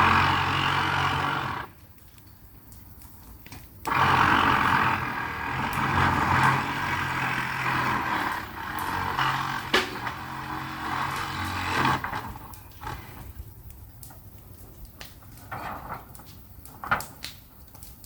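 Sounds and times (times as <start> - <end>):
engine running: 0.0 - 1.8, 3.9 - 13.2.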